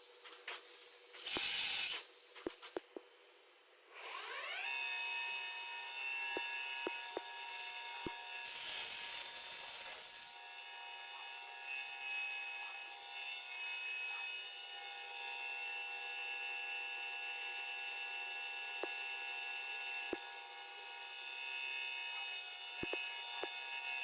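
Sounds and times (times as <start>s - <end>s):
machine spindle whine: 0.2s - 2.8s, 4.0s - 24.0s
burst of hiss: 1.2s - 2.8s, 8.4s - 10.2s.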